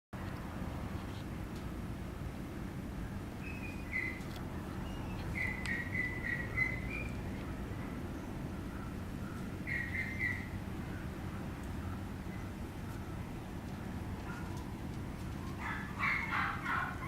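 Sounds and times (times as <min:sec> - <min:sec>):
puppy whimpering: 0:15.5 - 0:17.0.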